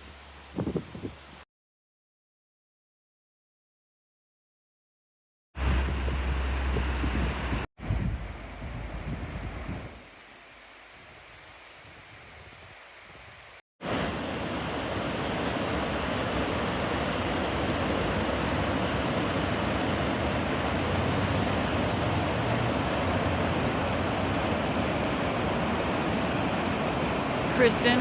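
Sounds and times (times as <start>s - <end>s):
waterfall roar: 13.8s - 28.0s.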